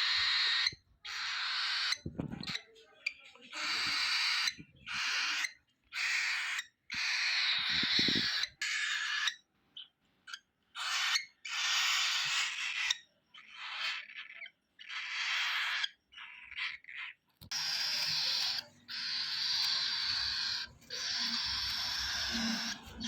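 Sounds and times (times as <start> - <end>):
cockatiel harsh raspy calls: 0.0 - 2.7, 3.5 - 23.0.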